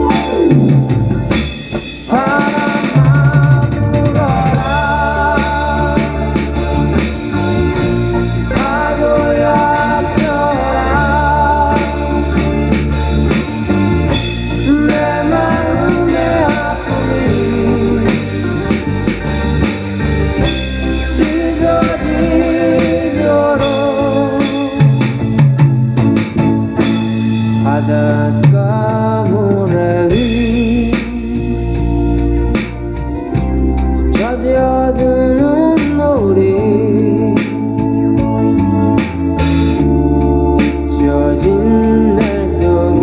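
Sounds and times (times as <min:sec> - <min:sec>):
drummer playing drum kit: 0:00.0 - 0:43.0
pop-rock band music: 0:00.0 - 0:43.0.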